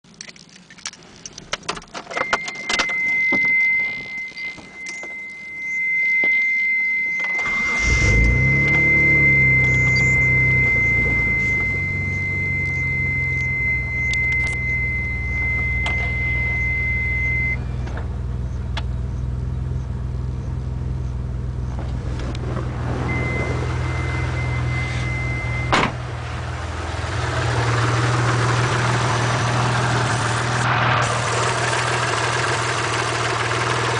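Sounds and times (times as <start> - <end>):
high steady tone: 2.2 - 17.7
car engine idling: 7.0 - 33.9
engine ticking: 7.3 - 16.8, 23.1 - 33.9.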